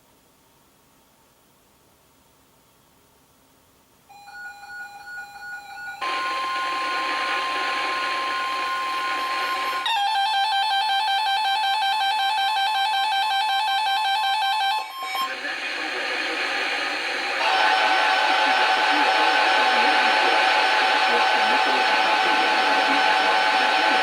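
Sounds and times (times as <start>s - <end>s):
steady warning alarm tone: 5.6s - 9.9s, 15.2s - 24.0s
radio static: 6.0s - 9.9s, 15.2s - 24.0s
rapid electronic alarm beeping: 6.0s - 9.9s.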